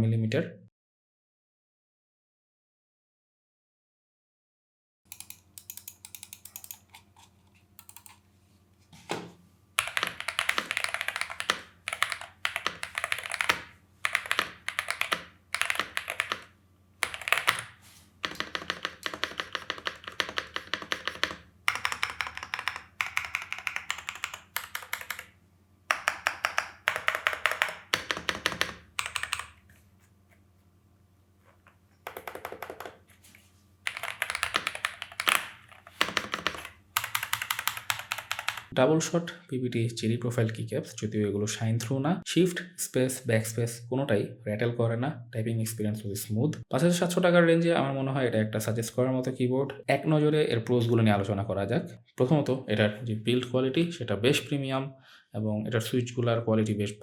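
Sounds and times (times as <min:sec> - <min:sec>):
mechanical keyboard typing: 0:05.1 - 0:07.0, 0:07.8 - 0:08.2, 0:09.8 - 0:25.3, 0:25.9 - 0:29.6, 0:32.0 - 0:33.0, 0:33.9 - 0:38.7.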